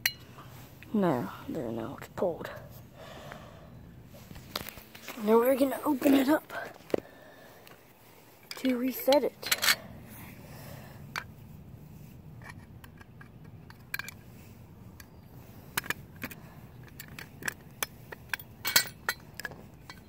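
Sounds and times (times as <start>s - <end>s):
metal clicks and scraping: 8.4s - 9.9s, 12.4s - 20.0s.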